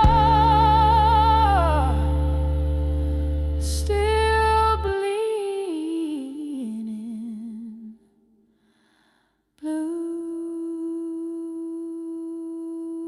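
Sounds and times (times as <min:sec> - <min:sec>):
held low chord: 0:00.0 - 0:05.0.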